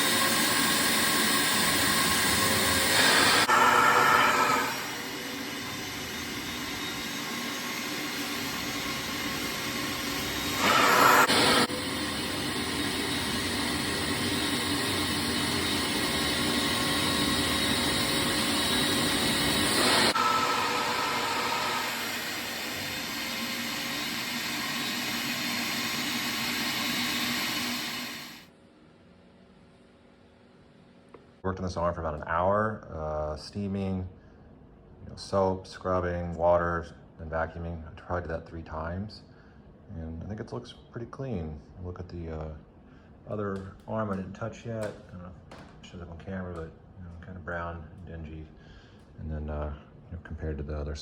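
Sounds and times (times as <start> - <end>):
wet dry vacuum sucking water: 0.0 - 28.4.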